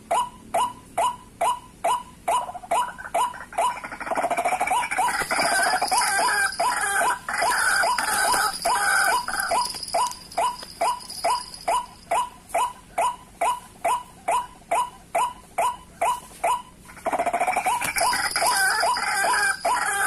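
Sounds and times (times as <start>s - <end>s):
waterhen croaking calls: 2.3s - 12.3s, 16.9s - 20.0s.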